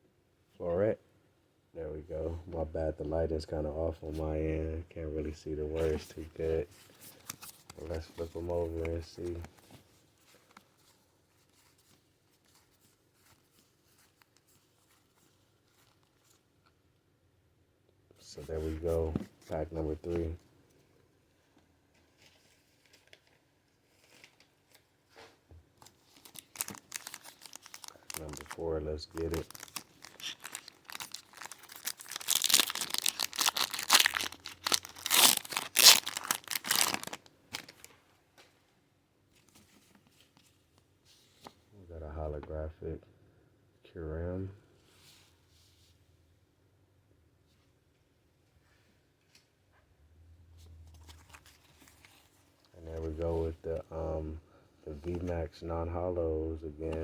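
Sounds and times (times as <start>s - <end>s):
foil wrapper tearing and crinkling: 25.9s - 37.7s.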